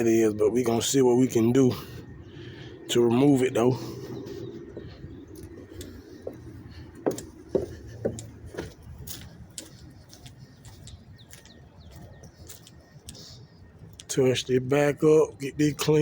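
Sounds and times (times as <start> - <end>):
birds chirping: 0.0 - 16.0
low steady hum: 0.0 - 16.0.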